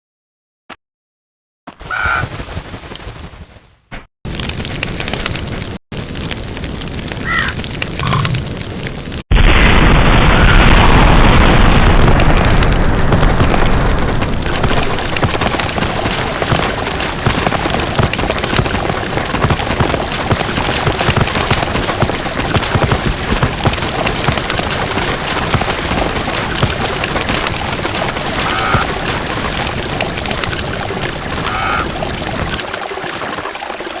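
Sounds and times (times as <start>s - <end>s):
object exploding in fire: 4.3s - 31.4s
campfire crackling and popping: 4.3s - 33.9s.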